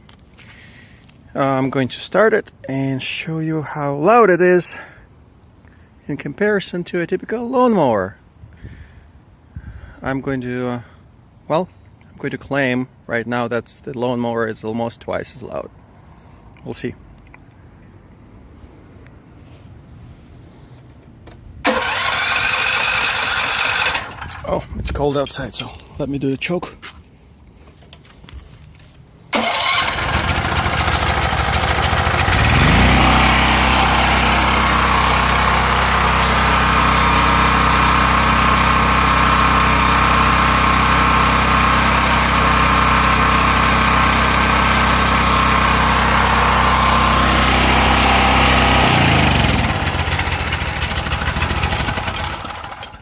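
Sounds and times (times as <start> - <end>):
generator engine starting and running: 21.6 - 24.8, 29.3 - 53.0.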